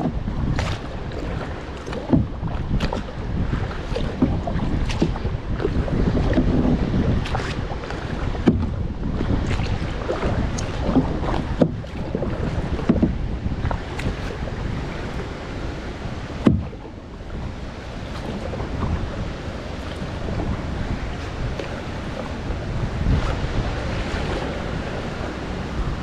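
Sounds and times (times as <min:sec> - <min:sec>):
paddle strokes in water: 0:00.0 - 0:26.0
wind buffeting microphone: 0:00.0 - 0:26.0
sharp knocks: 0:16.4 - 0:16.8.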